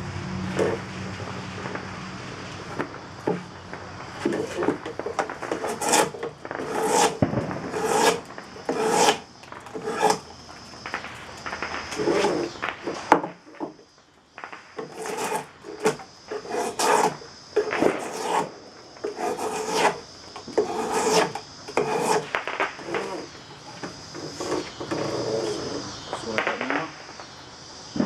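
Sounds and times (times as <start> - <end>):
drawknife cutting wood: 4.2 - 10.3, 12.0 - 13.0, 14.8 - 25.5.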